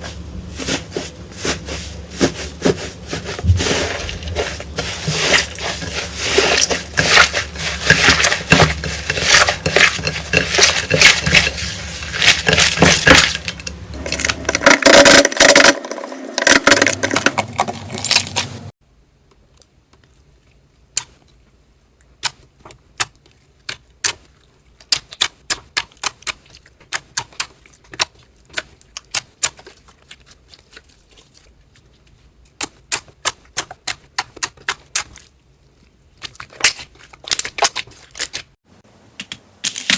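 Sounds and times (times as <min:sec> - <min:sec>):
slime crunchy crackling: 0:03.4 - 0:18.7.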